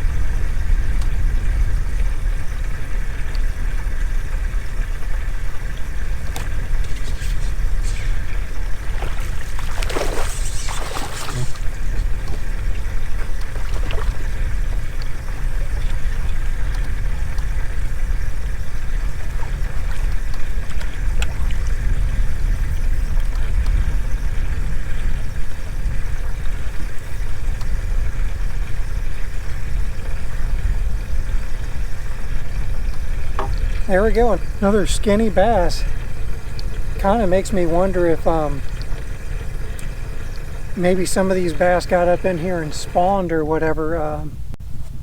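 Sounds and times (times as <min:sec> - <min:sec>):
boat low rumble: 0:00.0 - 0:45.0
faint hum: 0:00.0 - 0:45.0
water splash: 0:06.4 - 0:12.4.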